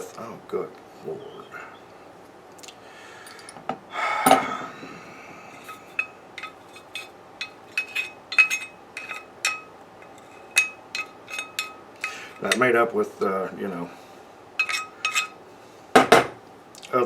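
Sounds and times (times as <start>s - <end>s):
metal parts clinking: 5.6s - 11.8s, 14.6s - 15.4s.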